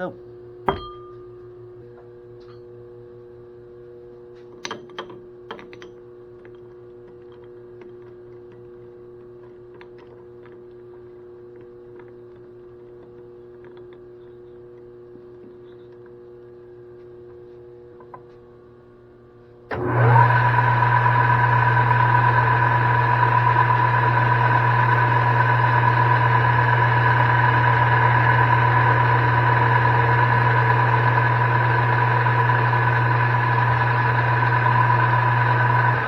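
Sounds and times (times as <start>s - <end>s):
metal lathe humming and whining: 19.7s - 36.0s.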